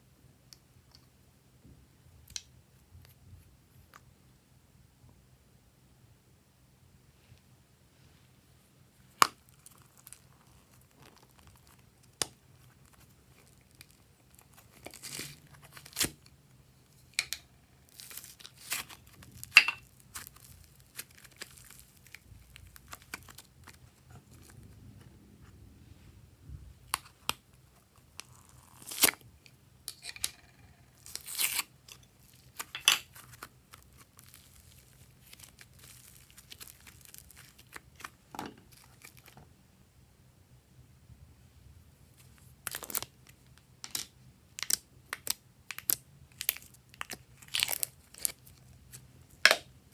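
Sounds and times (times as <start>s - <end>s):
slime popping and crackling: 9.1s - 16.3s, 17.0s - 24.6s, 26.9s - 29.2s, 31.0s - 39.3s, 44.6s - 49.8s.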